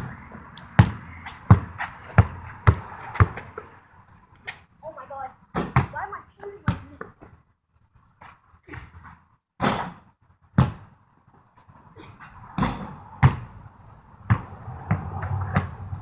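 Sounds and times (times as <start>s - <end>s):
basketball bouncing: 0.0s - 3.6s, 5.5s - 6.0s, 10.6s - 10.9s, 12.6s - 13.5s, 14.3s - 15.8s.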